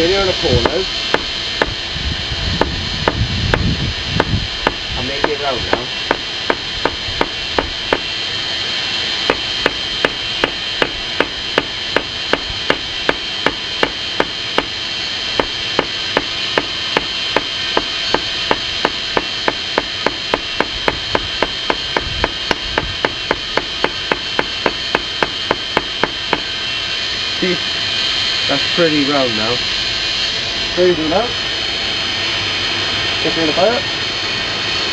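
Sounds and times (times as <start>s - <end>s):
steady hiss: 0.0s - 31.3s
hammer striking hot steel: 0.6s - 1.8s, 2.6s - 8.2s, 9.2s - 26.6s.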